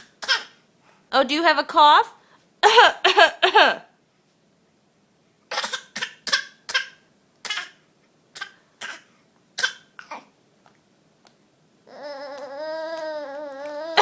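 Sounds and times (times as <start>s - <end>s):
baby fake coughing: 0.0s - 0.6s, 5.5s - 7.8s, 8.4s - 10.3s.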